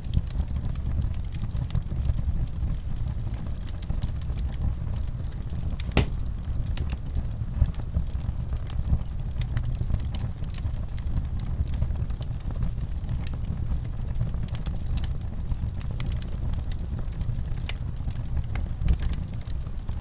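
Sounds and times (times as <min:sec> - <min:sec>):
wood fire crackling: 0:05.8 - 0:06.3.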